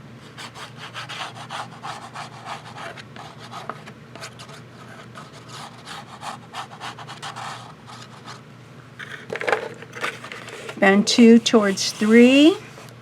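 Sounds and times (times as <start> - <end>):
rubbing strokes on paper: 0.4 - 8.3, 11.5 - 12.8.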